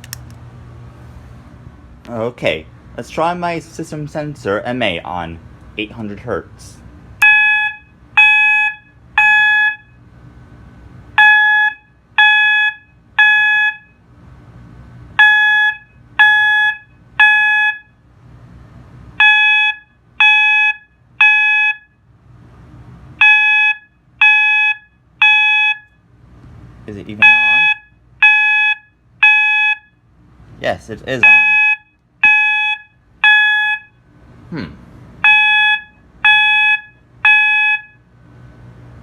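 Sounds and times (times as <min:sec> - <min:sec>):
alarm horn beeping: 0:07.2 - 0:10.0, 0:11.2 - 0:14.0, 0:15.2 - 0:18.0, 0:19.2 - 0:22.0, 0:23.2 - 0:26.0, 0:27.2 - 0:30.0, 0:31.2 - 0:34.0, 0:35.2 - 0:38.1.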